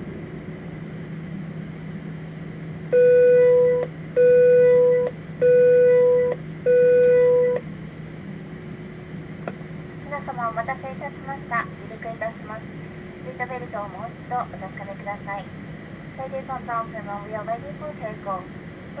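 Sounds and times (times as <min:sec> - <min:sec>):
aircraft cabin hum: 0:00.0 - 0:19.0
long electronic beeps: 0:02.9 - 0:07.6.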